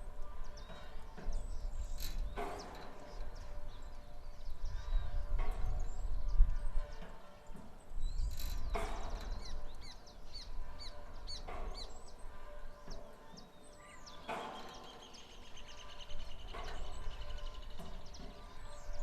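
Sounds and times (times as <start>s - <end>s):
low wind rumble: 0.0s - 12.4s
small birds chirping: 0.0s - 19.0s
windmill creaking: 0.0s - 19.0s.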